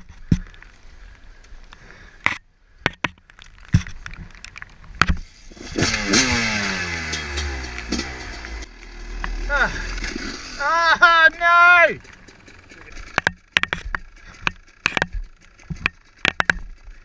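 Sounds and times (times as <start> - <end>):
dirt bike engine starting: 5.2 - 17.0.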